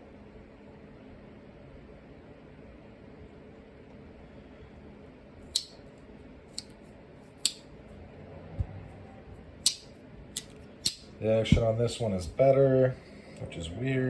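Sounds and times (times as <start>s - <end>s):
pocket knife blade clicking: 5.5s - 5.8s, 6.5s - 6.8s, 7.4s - 7.7s, 9.6s - 11.1s.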